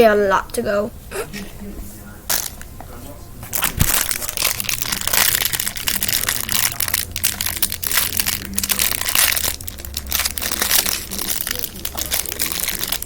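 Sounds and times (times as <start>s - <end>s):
plastic packaging crinkling: 3.5s - 13.0s.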